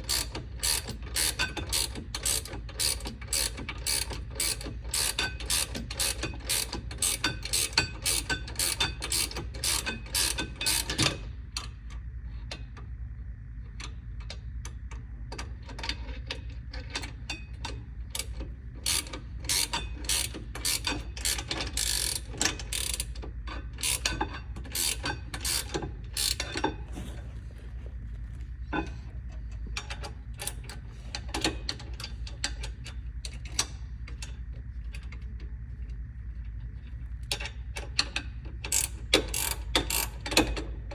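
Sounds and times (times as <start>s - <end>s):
ratchet wrench clicking: 0.1s - 11.0s, 18.2s - 23.1s, 23.8s - 26.5s, 38.7s - 40.3s.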